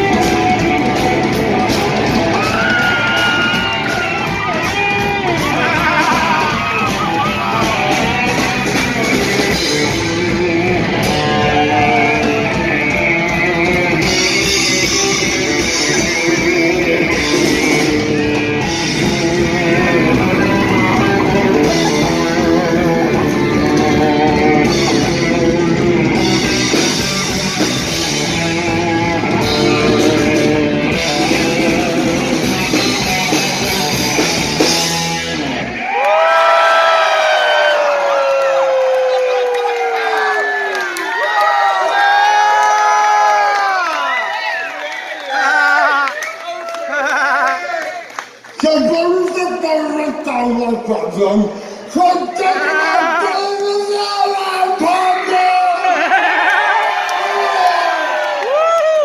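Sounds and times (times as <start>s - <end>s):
drum kit: 0.0s - 36.0s
heavy metal band playing: 0.0s - 36.0s
loud electric guitar: 0.0s - 44.2s.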